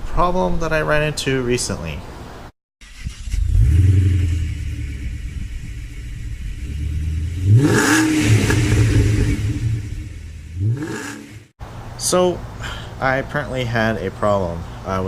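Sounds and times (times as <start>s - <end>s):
car engine running and revving: 3.3s - 11.5s.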